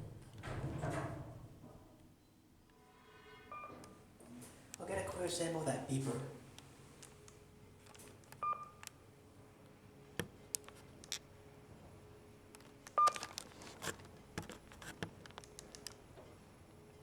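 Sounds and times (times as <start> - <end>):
faint elevator hum: 0.0 - 17.0
elevator beep: 3.5 - 4.0, 8.4 - 8.8, 13.0 - 13.2.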